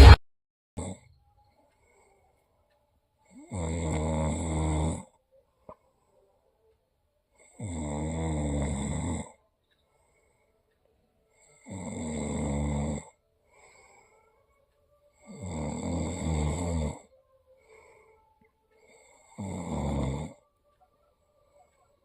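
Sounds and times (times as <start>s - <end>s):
quiet breathing: 0.8s - 22.0s
person snoring: 3.4s - 5.1s, 7.4s - 9.4s, 11.6s - 14.2s, 15.2s - 18.2s, 18.8s - 20.4s.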